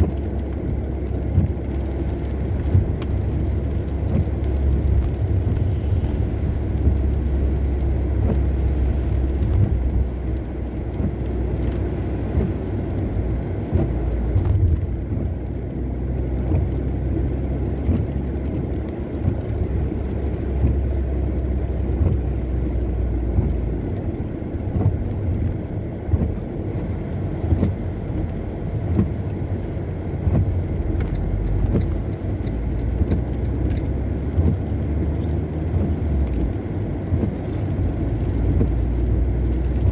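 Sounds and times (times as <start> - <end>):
car engine and tyres rumbling: 0.0 - 39.9.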